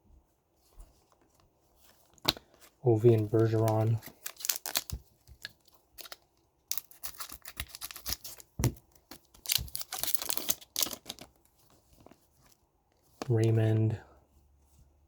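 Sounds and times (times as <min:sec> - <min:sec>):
trading cards rustling: 0:01.8 - 0:11.4.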